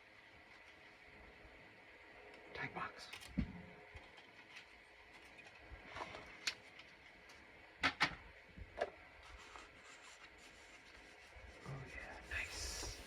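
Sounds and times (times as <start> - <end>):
paper rustling: 9.2 - 11.8.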